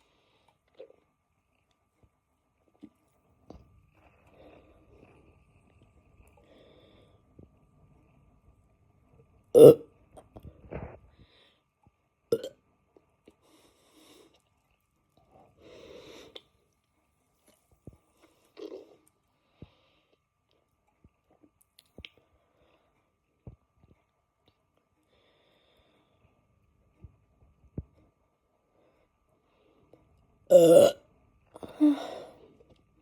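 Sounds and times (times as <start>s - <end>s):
person burping: 9.6s - 9.8s, 12.3s - 12.5s, 30.5s - 31.0s.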